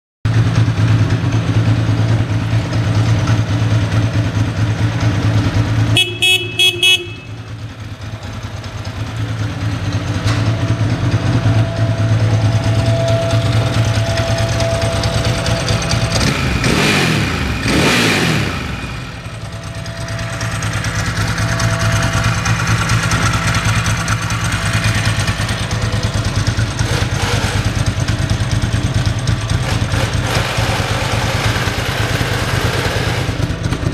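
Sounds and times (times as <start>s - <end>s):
motorcycle engine idling: 0.3s - 33.9s
horn short beeps: 5.9s - 7.6s.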